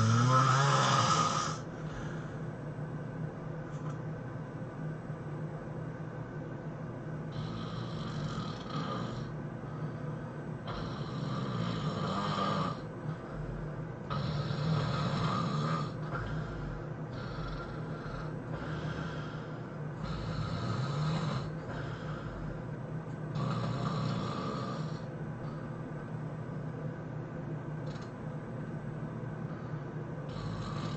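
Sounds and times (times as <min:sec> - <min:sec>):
person snoring: 0:00.0 - 0:02.4, 0:07.3 - 0:10.0, 0:10.6 - 0:22.7, 0:23.3 - 0:25.1, 0:30.3 - 0:30.9.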